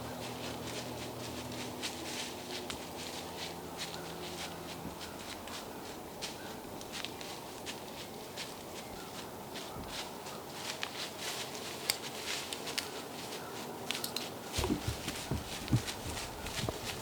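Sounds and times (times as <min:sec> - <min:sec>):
footsteps crunching dry leaves: 0:00.0 - 0:14.0, 0:14.6 - 0:17.0
heavy low knocks: 0:14.6 - 0:16.8.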